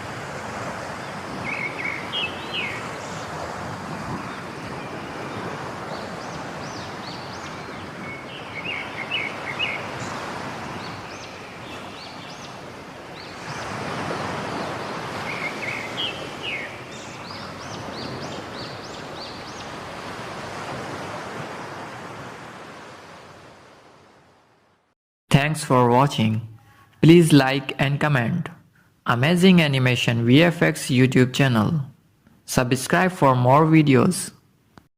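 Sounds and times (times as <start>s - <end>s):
small birds chirping: 1.0s - 3.5s, 4.1s - 19.8s.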